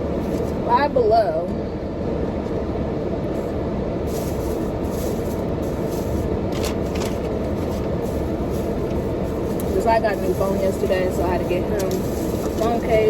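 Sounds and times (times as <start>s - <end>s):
air conditioning fan blowing: 0.0s - 13.0s
shopping bag rustling: 4.0s - 13.0s.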